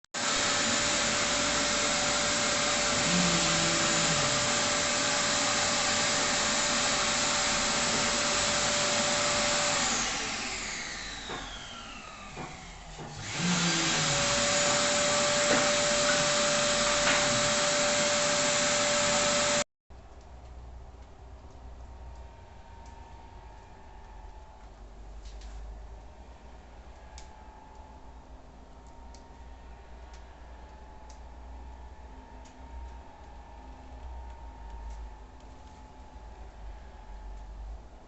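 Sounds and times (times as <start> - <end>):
electric motor running: 0.2 - 19.6
motor spinning down with whine: 0.2 - 19.6.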